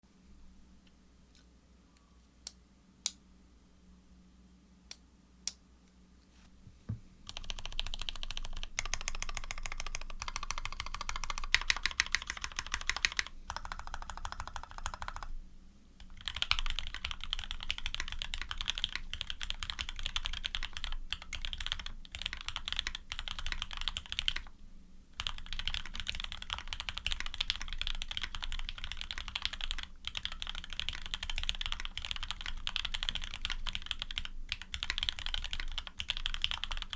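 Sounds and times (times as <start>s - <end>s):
typing on mechanical keyboard: 7.3s - 15.3s, 16.0s - 24.5s, 25.2s - 36.9s.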